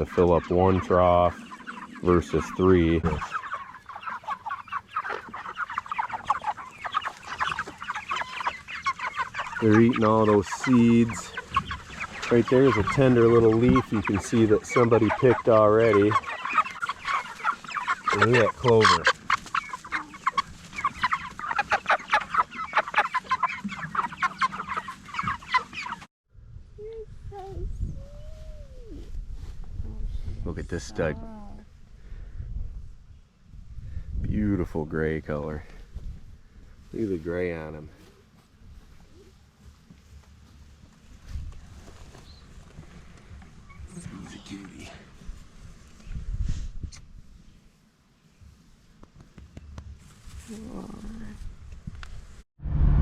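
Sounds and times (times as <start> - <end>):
chickens clucking and chirping: 0.0 - 26.1, 30.5 - 51.4.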